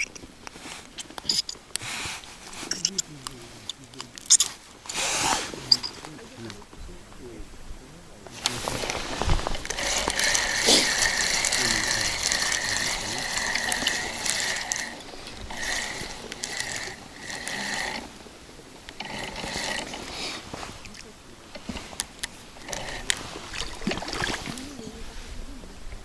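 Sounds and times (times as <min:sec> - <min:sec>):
fishing reel whirring: 0:08.4 - 0:20.5, 0:21.6 - 0:24.8.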